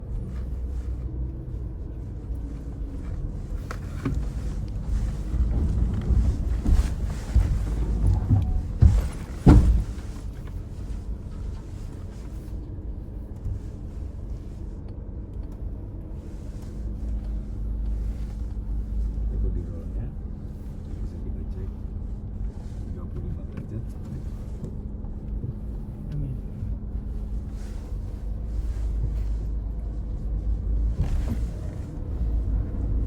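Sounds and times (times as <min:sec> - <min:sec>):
vehicle low rumble: 0:00.0 - 0:33.0
vehicle knocks and clunks: 0:02.9 - 0:12.3, 0:22.4 - 0:33.0.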